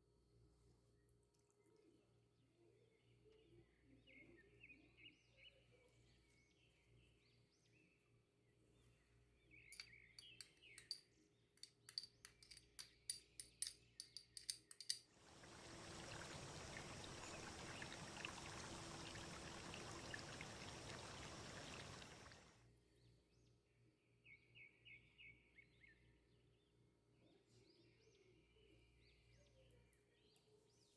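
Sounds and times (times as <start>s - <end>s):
birds chirping faintly: 0.9s - 30.9s
kitchen clinks: 9.8s - 11.0s, 11.6s - 15.0s
liquid pouring: 14.8s - 22.6s.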